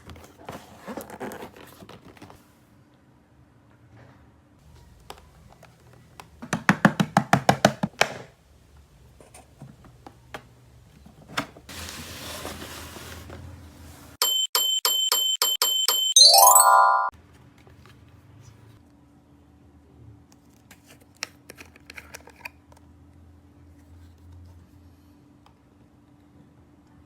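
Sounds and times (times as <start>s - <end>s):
toy fast beeping: 14.2s - 17.1s
toy rising jingle: 16.2s - 17.1s.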